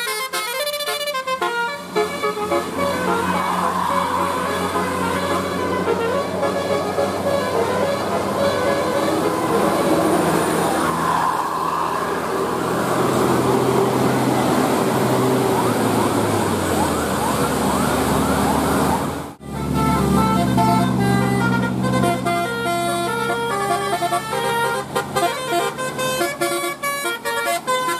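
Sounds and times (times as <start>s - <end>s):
musical air horns playing tune: 0.0s - 11.1s, 19.4s - 27.9s
bus engine: 0.0s - 27.9s
road noise: 0.0s - 27.9s
siren-like rising glides: 1.9s - 21.5s.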